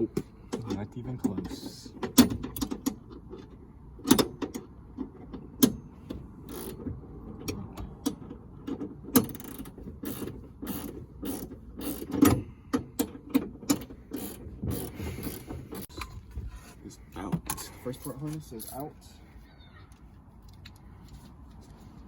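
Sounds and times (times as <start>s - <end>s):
ratchet wrench clicking: 6.4s - 6.8s, 9.2s - 12.4s, 13.7s - 15.9s.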